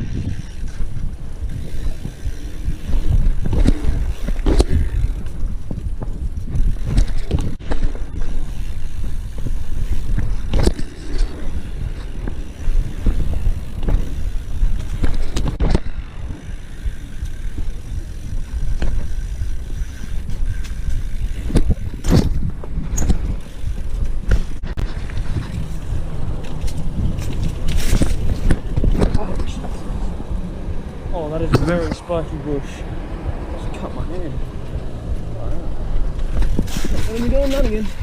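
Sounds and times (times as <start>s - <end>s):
wind on microphone: 0.0s - 32.2s, 32.8s - 38.0s
bike tyres rolling: 0.0s - 38.0s
sharp knocks from bike: 12.0s - 16.0s, 20.3s - 25.8s.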